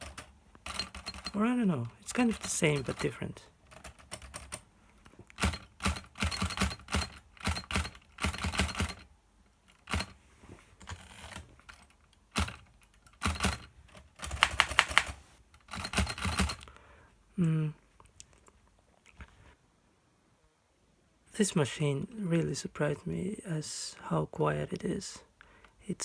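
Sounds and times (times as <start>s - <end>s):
typewriter key strikes: 5.4s - 9.0s.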